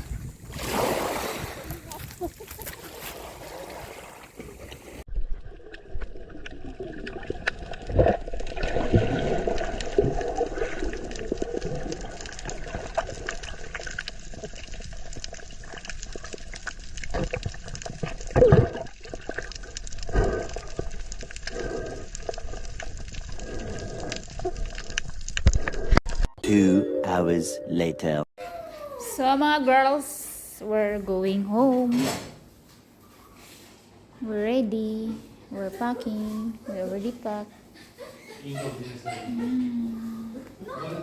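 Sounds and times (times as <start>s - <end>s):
water sloshing and splashing: 0.0s - 25.8s.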